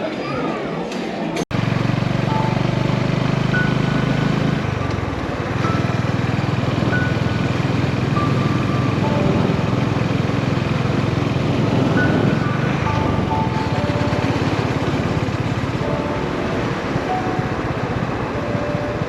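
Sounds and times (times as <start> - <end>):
motorcycle engine running: 1.5 - 19.0.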